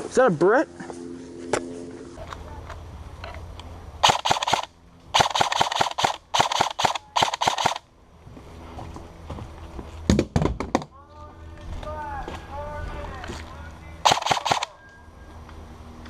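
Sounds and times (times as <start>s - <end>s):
airsoft gun firing bursts: 4.0s - 7.8s, 14.0s - 14.7s.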